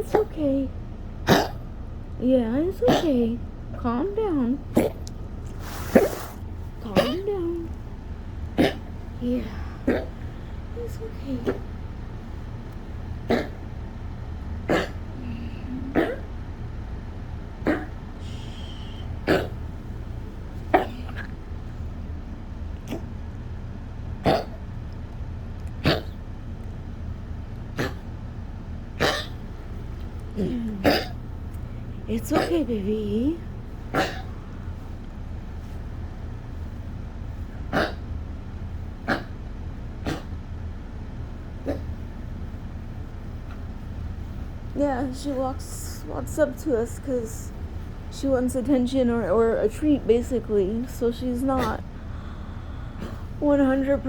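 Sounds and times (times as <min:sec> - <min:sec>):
steady low hum: 0:00.0 - 0:54.0
dog coughing and hacking: 0:01.2 - 0:01.8, 0:02.8 - 0:03.2, 0:04.6 - 0:16.6, 0:17.5 - 0:21.8, 0:22.7 - 0:23.4, 0:24.2 - 0:24.8, 0:25.7 - 0:26.3, 0:27.5 - 0:32.7, 0:33.7 - 0:34.9, 0:37.4 - 0:38.2, 0:38.9 - 0:40.6, 0:41.5 - 0:42.3, 0:51.5 - 0:52.2, 0:53.0 - 0:53.4.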